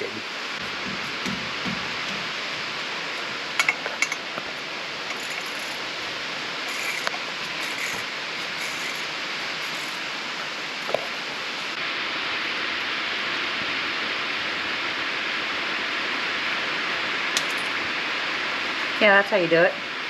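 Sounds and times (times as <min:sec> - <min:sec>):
steady hiss: 0:00.0 - 0:20.0
metal tools clinking: 0:03.2 - 0:04.3, 0:05.0 - 0:06.0, 0:06.6 - 0:10.1, 0:17.4 - 0:17.8.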